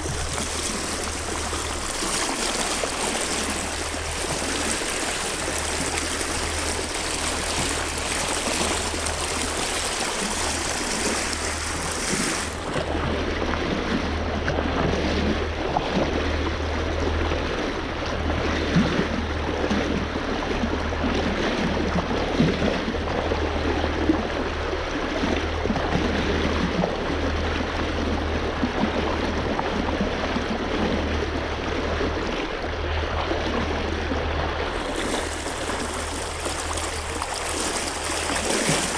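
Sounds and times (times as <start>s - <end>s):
rushing water: 0.0s - 38.9s.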